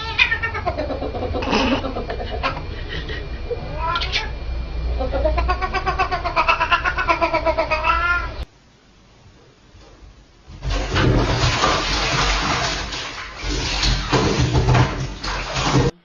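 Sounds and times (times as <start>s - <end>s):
cat yowling: 0.0s - 2.6s, 3.6s - 4.4s, 5.0s - 8.5s.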